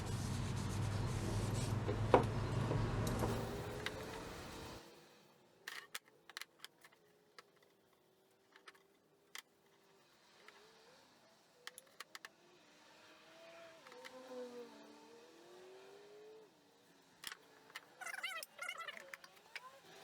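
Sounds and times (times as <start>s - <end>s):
rubbing noise: 0.0s - 2.1s.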